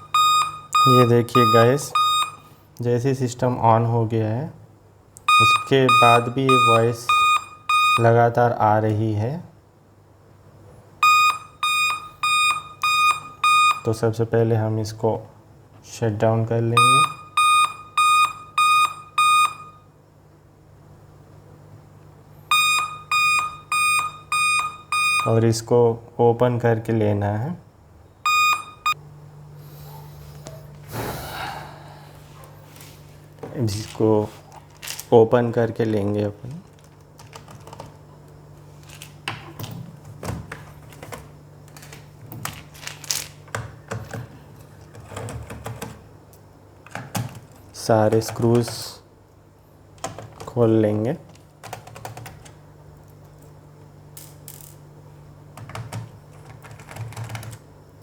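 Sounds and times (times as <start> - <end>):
laptop beeping: 0.0 - 2.5, 5.3 - 8.1, 11.0 - 13.9, 16.8 - 19.8, 22.5 - 25.3, 28.3 - 29.0.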